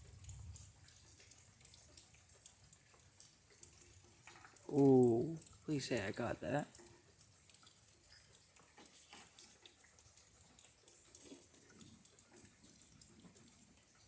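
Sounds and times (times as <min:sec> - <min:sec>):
dripping water: 0:00.0 - 0:14.0
faint rain patter: 0:00.0 - 0:14.0.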